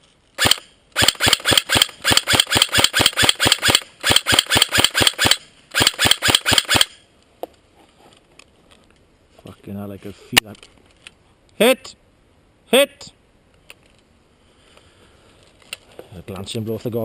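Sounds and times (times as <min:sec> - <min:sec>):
airsoft rifle full auto bursts: 0:00.4 - 0:07.0.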